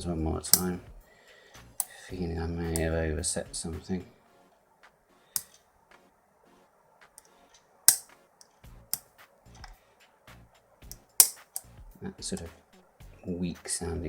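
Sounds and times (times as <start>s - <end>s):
lock pins clicking: 0.5s - 0.8s, 1.6s - 2.1s, 5.4s - 5.6s, 7.2s - 9.8s, 10.9s - 11.8s.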